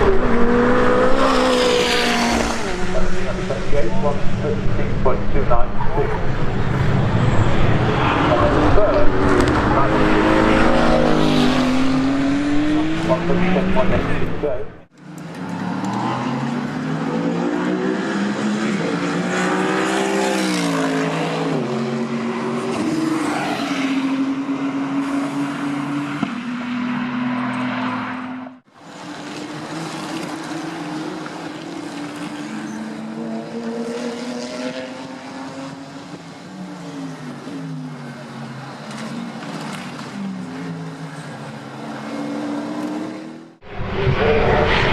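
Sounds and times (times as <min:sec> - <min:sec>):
race car engine shifting gears: 0:00.0 - 0:05.1, 0:08.2 - 0:16.8
race car engine rising: 0:00.0 - 0:44.9.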